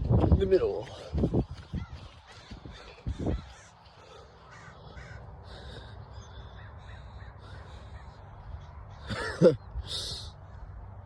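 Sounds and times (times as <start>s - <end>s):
crows cawing: 1.6s - 9.4s.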